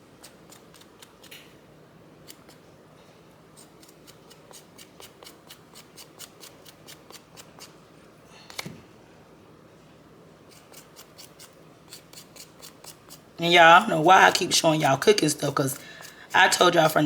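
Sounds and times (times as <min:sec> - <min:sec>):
metal spoon scraping ginger skin: 0:00.2 - 0:01.4, 0:03.6 - 0:07.7, 0:10.5 - 0:17.0.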